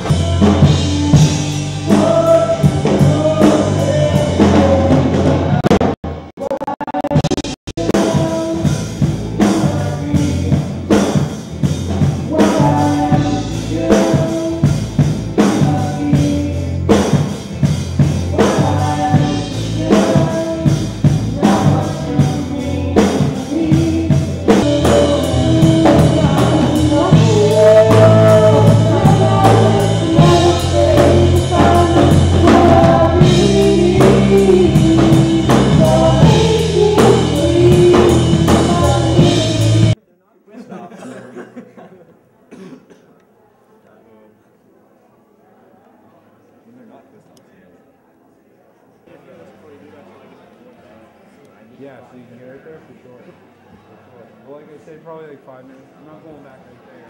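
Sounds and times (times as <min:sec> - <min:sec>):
person singing: 0:00.0 - 0:11.3, 0:11.9 - 0:40.0
band playing a song: 0:00.0 - 0:40.0
drum kit steady beat: 0:00.0 - 0:40.0.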